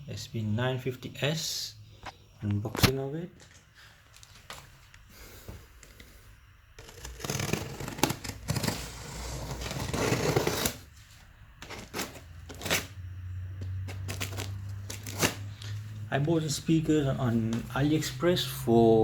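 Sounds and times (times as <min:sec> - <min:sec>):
packaging rustling and scraping: 0:06.8 - 0:13.0, 0:13.8 - 0:15.8.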